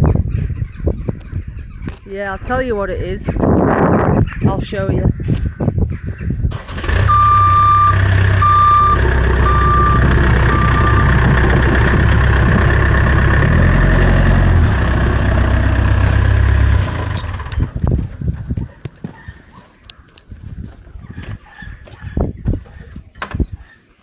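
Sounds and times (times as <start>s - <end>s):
tractor engine running: 6.5s - 18.5s
reversing alarm beeping: 7.0s - 11.4s.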